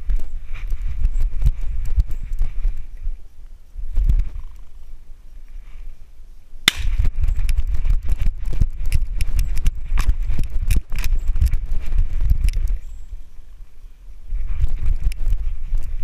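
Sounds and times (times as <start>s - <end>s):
sharp crack: 6.7s - 7.1s.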